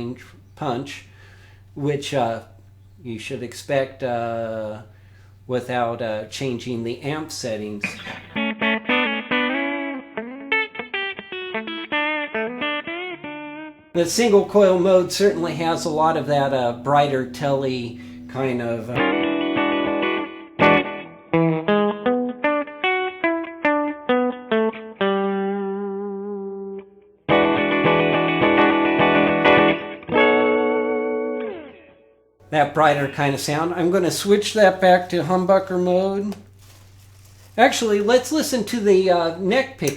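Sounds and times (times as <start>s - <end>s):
electric guitar single notes: 7.8s - 32.2s.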